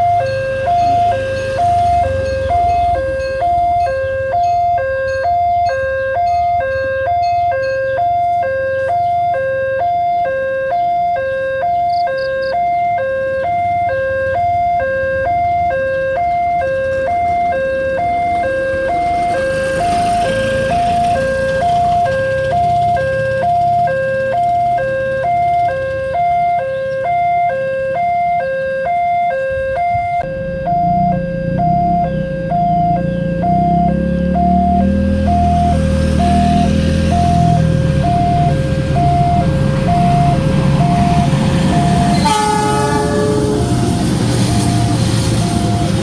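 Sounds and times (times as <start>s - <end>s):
level-crossing alarm two-tone: 0.0s - 46.0s
rumble and hiss of passing vehicle: 18.2s - 26.1s, 33.9s - 46.0s.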